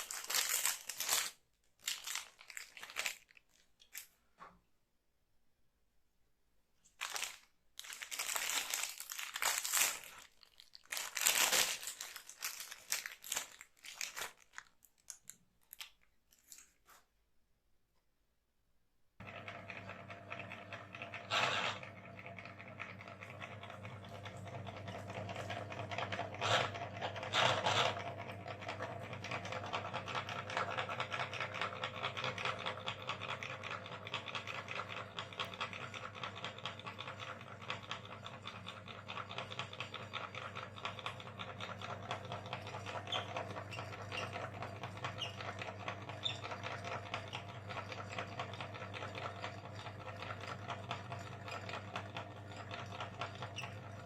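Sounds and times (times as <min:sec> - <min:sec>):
meat grinder motor running: 0:19.2 - 0:54.0.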